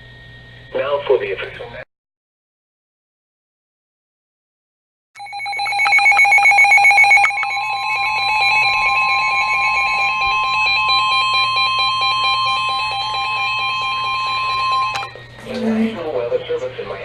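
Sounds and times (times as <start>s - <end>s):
rapidly pulsing electronic beeping: 5.2s - 15.2s
steady warning alarm tone: 5.2s - 16.2s.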